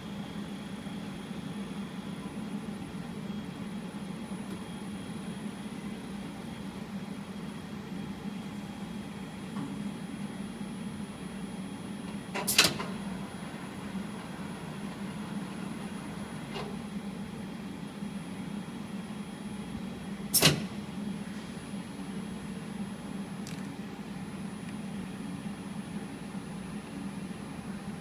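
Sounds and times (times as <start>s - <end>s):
lathe humming: 13.0s - 17.1s.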